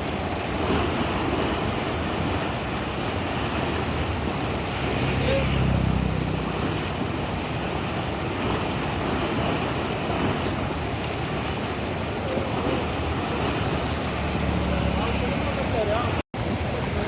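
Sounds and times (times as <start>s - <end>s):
river water rushing: 0.0s - 17.0s.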